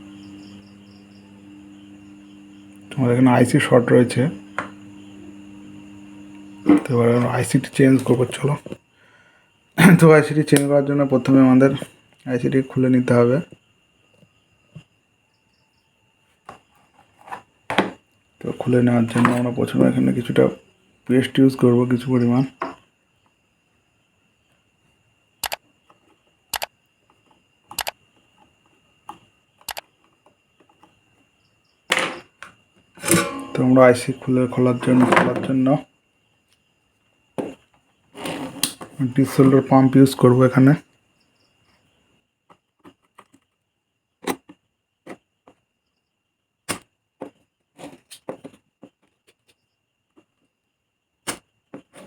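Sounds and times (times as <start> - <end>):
small hard objects clicking together: 27.7 - 27.9.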